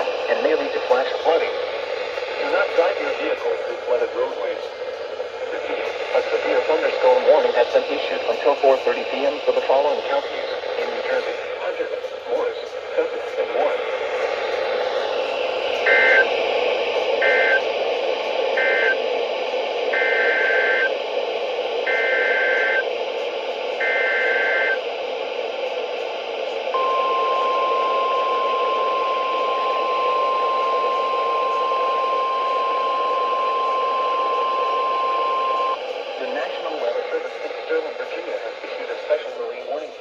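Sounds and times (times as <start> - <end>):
radio hiss: 0.0 - 40.0
steady warning alarm tone: 14.7 - 19.2, 19.8 - 36.9.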